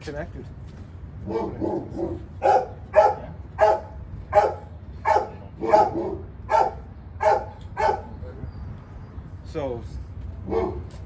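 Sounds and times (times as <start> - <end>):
dog barking: 1.3 - 8.2, 10.5 - 10.9.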